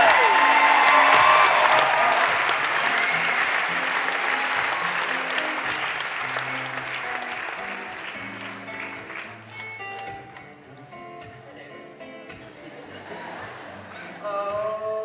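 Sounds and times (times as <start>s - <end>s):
audience applauding and cheering: 0.0s - 10.8s
acoustic guitar playing: 0.0s - 15.0s.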